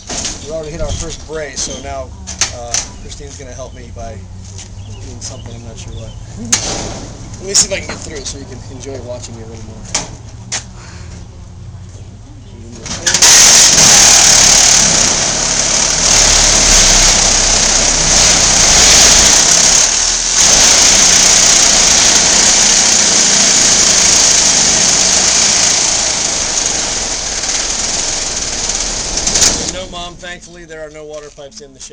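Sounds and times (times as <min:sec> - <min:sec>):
power saw cutting wood: 0:13.0 - 0:30.1.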